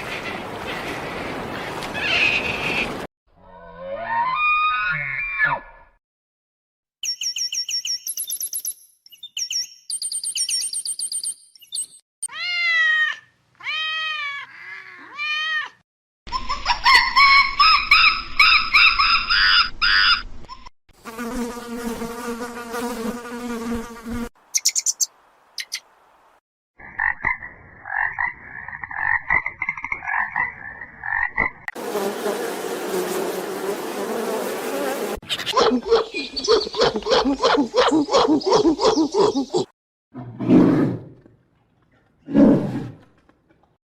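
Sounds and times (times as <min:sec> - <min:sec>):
rising and falling animal calls: 0:01.9 - 0:05.9, 0:35.2 - 0:39.7
high repeated animal chirps: 0:07.0 - 0:12.0, 0:24.5 - 0:25.8.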